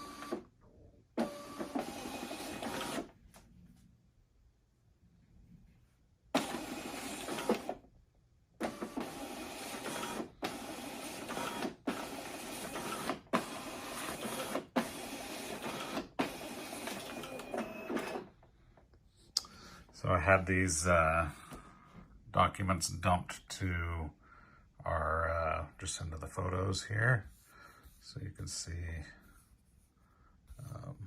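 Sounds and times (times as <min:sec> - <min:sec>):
document scanner whirring: 0:00.0 - 0:03.2, 0:06.3 - 0:07.9, 0:08.6 - 0:18.4.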